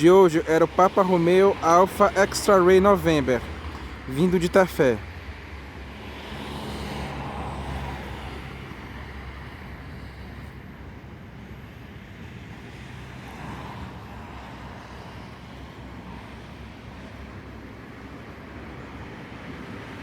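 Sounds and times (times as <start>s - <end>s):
road traffic rumble: 0.0s - 20.0s
vehicle passing: 0.2s - 10.4s.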